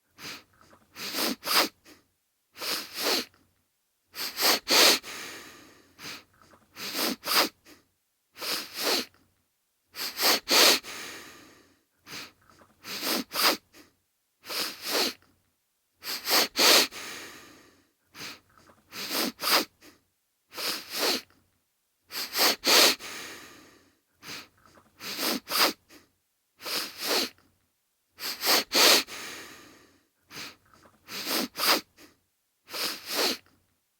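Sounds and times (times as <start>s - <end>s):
man sniffling: 0.1s - 2.0s, 2.6s - 3.3s, 4.1s - 7.8s, 8.4s - 9.1s, 10.0s - 15.2s, 16.0s - 21.2s, 22.1s - 27.4s, 28.2s - 33.4s
breath out: 28.2s - 33.6s.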